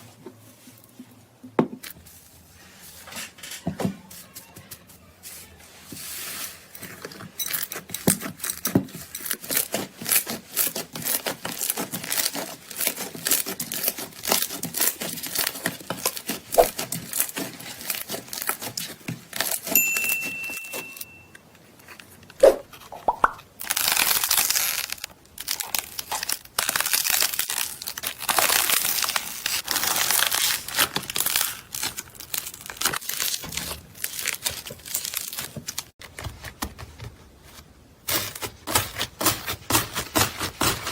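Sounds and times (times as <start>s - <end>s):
slime crackling and popping: 7.6s - 19.7s, 22.4s - 35.9s.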